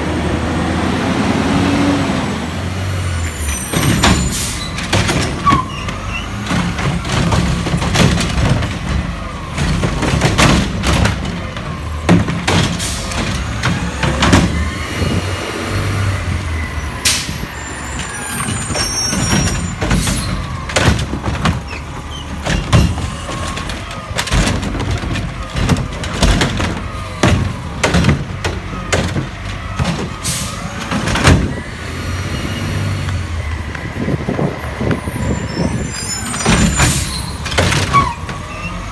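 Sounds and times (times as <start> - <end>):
diesel engine rumbling: 0.0 - 38.9
sharp metal clanks and bangs: 3.5 - 14.8, 17.0 - 31.6.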